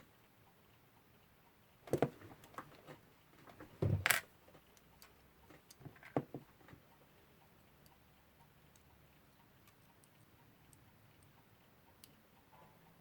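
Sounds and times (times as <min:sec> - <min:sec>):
tweezers clicking on clock parts: 0:07.0 - 0:12.2.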